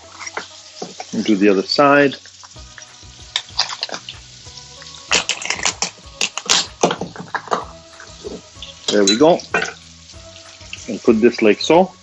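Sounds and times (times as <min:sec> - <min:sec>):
lobster shell cracking: 0:02.3 - 0:08.4.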